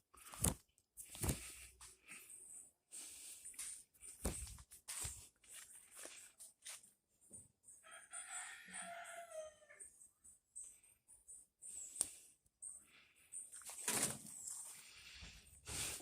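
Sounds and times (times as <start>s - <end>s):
rooster crowing: 7.8s - 9.9s.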